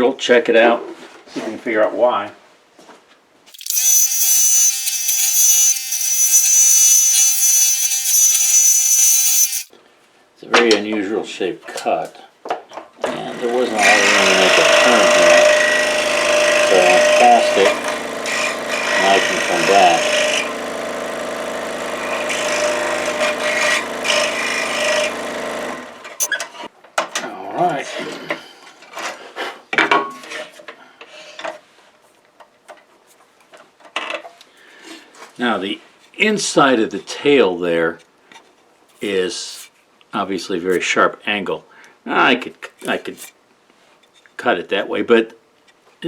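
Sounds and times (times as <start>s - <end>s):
saw cutting hiss: 3.5s - 9.7s, 13.8s - 20.5s
scroll saw whining: 3.5s - 9.7s, 13.2s - 26.3s.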